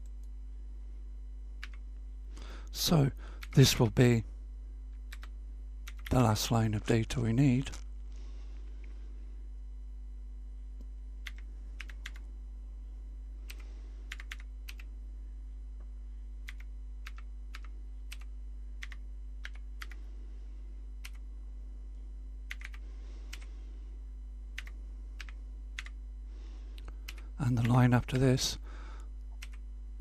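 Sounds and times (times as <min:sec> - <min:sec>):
steady low hum: 0:00.0 - 0:30.0
keyboard keys clicking: 0:22.5 - 0:23.5.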